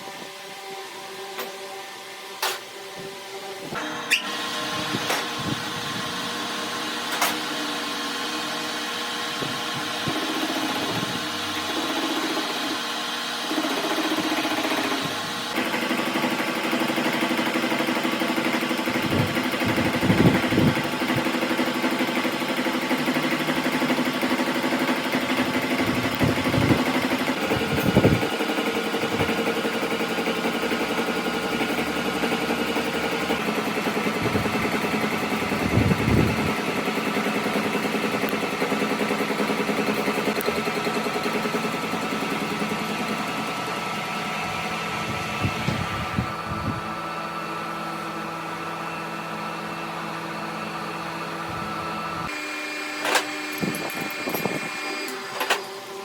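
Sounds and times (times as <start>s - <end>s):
machine tool motor humming: 0.0s - 56.0s.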